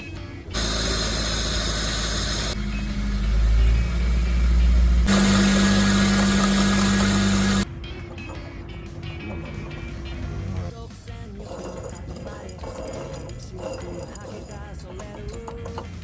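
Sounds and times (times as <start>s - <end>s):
car engine running: 0.1s - 10.7s
steady drone: 0.6s - 10.7s.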